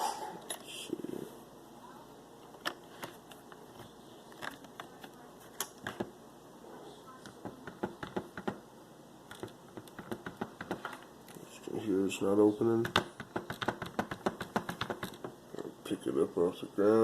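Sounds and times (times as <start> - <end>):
lock clicking and tapping: 9.3 - 11.0, 12.8 - 15.4.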